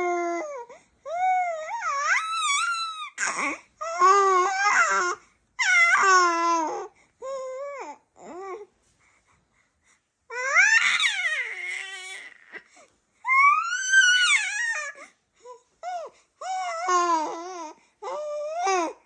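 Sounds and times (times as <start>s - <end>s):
baby wailing: 1.2s - 6.9s, 10.3s - 12.7s, 13.3s - 15.0s.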